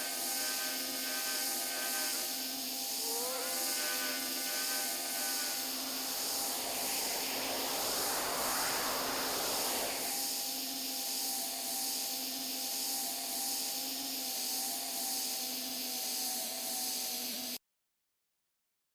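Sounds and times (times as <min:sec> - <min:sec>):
faint steady hum: 0:00.0 - 0:10.8
airplane noise hiss: 0:00.0 - 0:17.6
low pulsing tone: 0:03.0 - 0:10.1.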